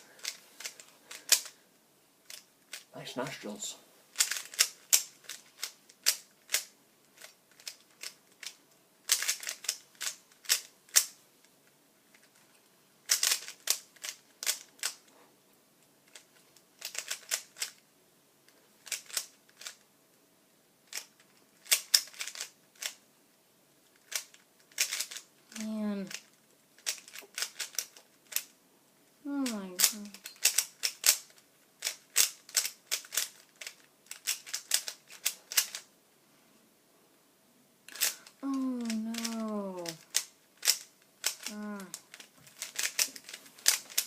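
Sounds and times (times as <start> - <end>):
puzzle cube layers clicking: 0.2 - 1.6, 2.2 - 2.9, 4.1 - 11.2, 13.1 - 15.1, 16.1 - 17.8, 18.8 - 19.8, 20.9 - 23.0, 23.9 - 28.5, 29.3 - 35.9, 37.9 - 44.0.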